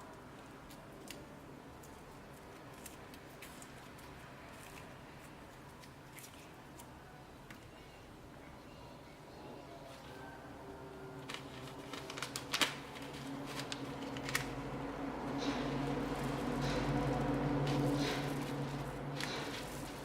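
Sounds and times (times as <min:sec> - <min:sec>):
low steady background noise: 0:00.0 - 0:20.0.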